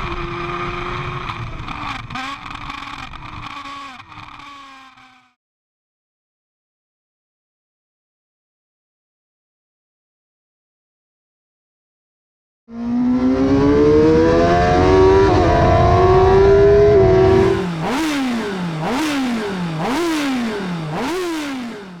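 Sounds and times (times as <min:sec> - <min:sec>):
motorcycle engine at speed: 0:00.0 - 0:05.4, 0:12.7 - 0:22.0
sharp exhaust crack: 0:17.2 - 0:22.0.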